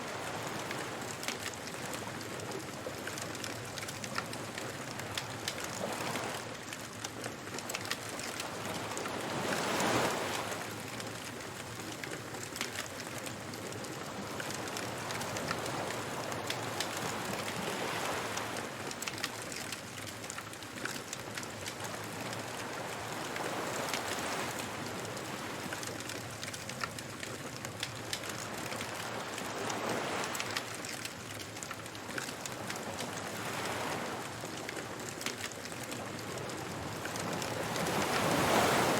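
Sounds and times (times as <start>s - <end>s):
ocean waves washing in: 8.1s - 19.5s, 21.7s - 26.4s, 27.5s - 38.9s.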